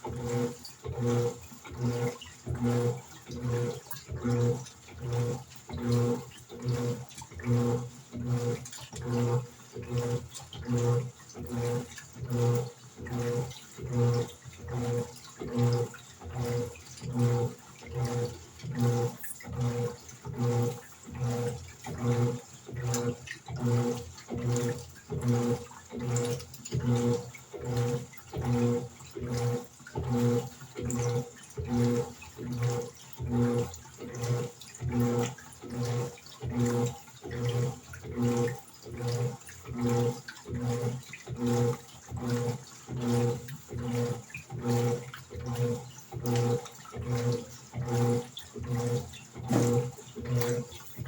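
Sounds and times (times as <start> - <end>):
washing machine motor humming: 0.0 - 51.0
water sloshing: 31.0 - 51.0.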